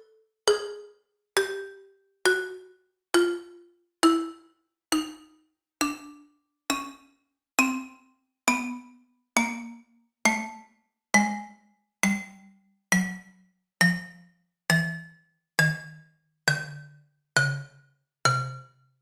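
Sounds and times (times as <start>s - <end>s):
descending xylophone-like footsteps: 16.5s - 16.8s, 17.4s - 18.6s.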